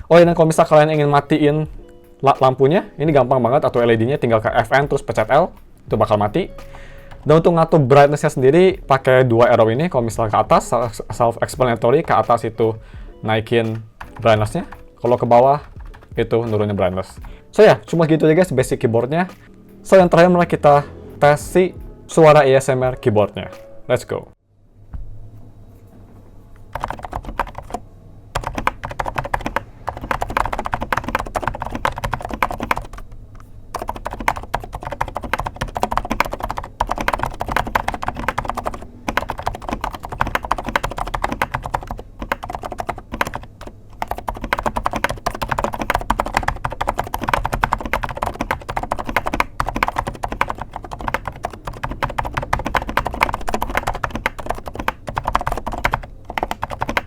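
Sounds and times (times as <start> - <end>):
mechanical keyboard typing: 6.0 - 7.5, 11.6 - 12.7, 13.7 - 17.0, 26.7 - 27.8, 28.4 - 57.0.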